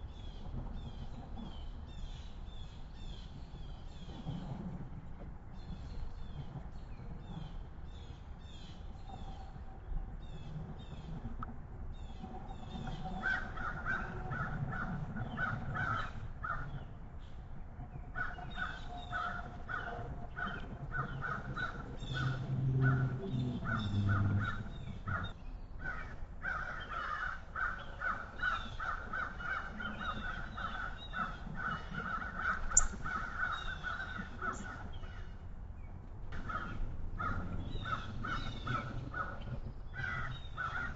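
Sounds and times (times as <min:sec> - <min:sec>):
birds giving harsh repeated calls: 0:18.2 - 0:35.3
low rumble: 0:19.0 - 0:25.5
small songbirds chirping: 0:27.7 - 0:36.0.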